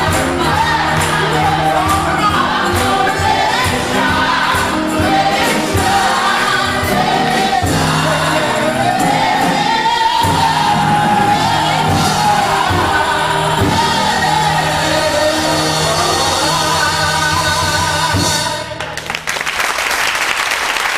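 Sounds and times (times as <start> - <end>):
woman singing: 0.0 - 18.7
band with drums: 0.0 - 18.8
applause: 18.8 - 20.9.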